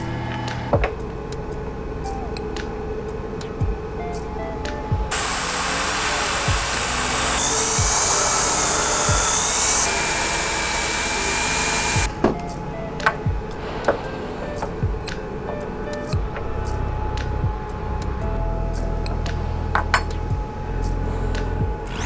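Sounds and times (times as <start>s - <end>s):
jigsaw cutting plywood: 5.1s - 12.1s.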